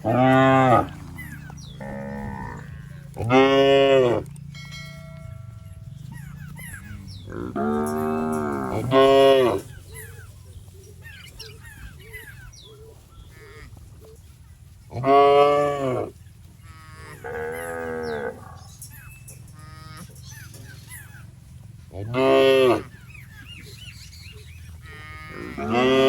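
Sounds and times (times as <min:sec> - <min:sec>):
cattle mooing: 0:00.0 - 0:04.5, 0:05.9 - 0:10.2, 0:14.9 - 0:20.6, 0:21.9 - 0:26.0.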